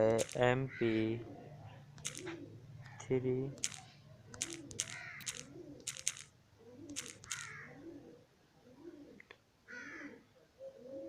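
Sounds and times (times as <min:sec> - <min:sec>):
crows cawing: 0:04.8 - 0:05.4, 0:07.3 - 0:07.8, 0:09.7 - 0:10.2.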